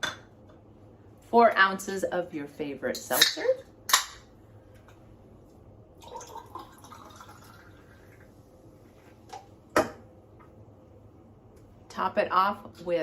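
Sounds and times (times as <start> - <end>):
seltzer fizzing into a glass: 6.0 - 8.3.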